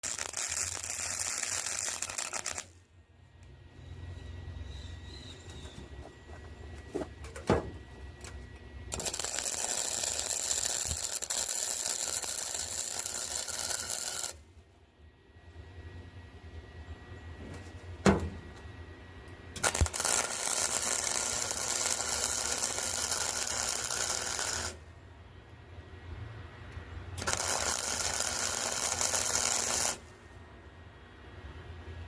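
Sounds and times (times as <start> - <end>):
arc welding crackling and hissing: 0.0 - 2.9, 7.9 - 14.5, 19.5 - 24.8, 27.1 - 30.3.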